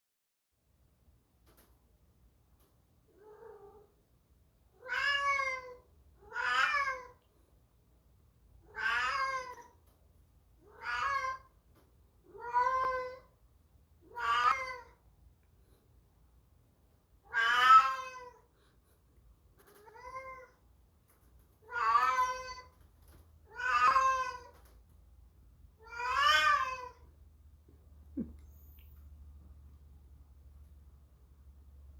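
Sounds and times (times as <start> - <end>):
cat meowing: 4.8 - 7.2, 8.7 - 9.7, 10.7 - 11.5, 12.3 - 13.2, 14.1 - 15.0, 17.3 - 18.4, 21.7 - 22.7, 23.5 - 24.6, 25.8 - 27.0.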